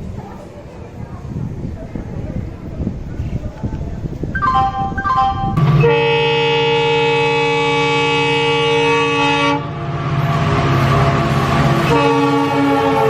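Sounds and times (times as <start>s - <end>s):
train rumbling past: 0.0s - 13.0s
train horn blast: 5.4s - 13.0s.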